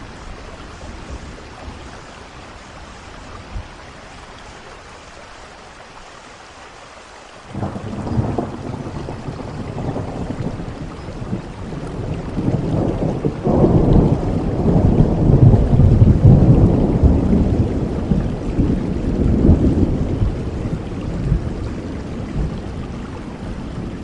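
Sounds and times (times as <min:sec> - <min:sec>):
steady rain: 0:00.0 - 0:24.0
low rumble of thunder: 0:07.5 - 0:24.0.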